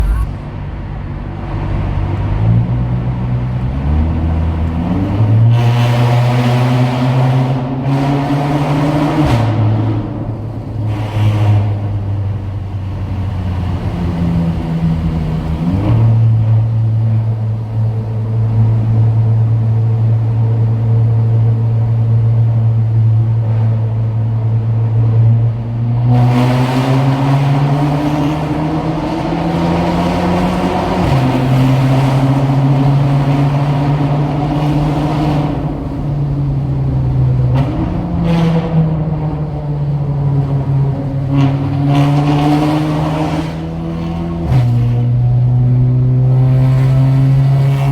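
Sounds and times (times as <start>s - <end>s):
car engine low drone: 0.0s - 7.8s, 8.6s - 26.1s, 27.1s - 47.9s.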